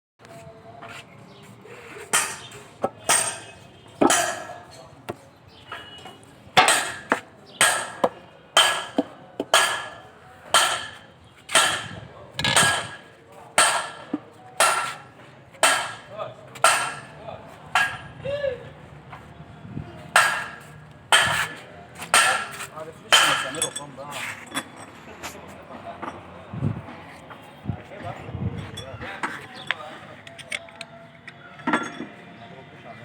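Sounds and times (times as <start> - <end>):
hammer blows on metal: 2.0 - 4.8, 5.7 - 18.5, 20.1 - 23.8.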